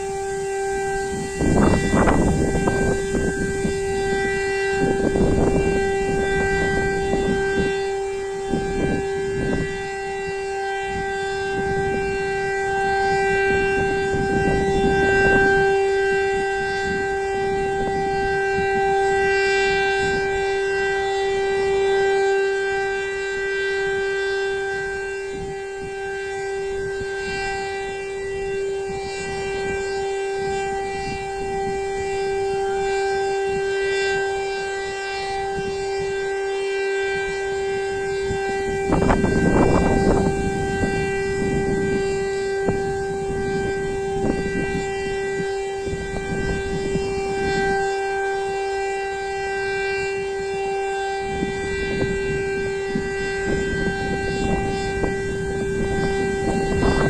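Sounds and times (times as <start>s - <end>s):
warning siren steady tone: 0.0s - 57.0s
gusty low rumbling noise: 0.9s - 7.6s, 37.9s - 44.9s, 51.3s - 57.0s.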